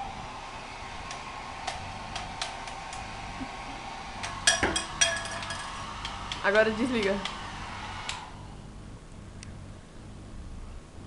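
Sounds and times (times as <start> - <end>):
hair dryer running: 0.0 - 8.7.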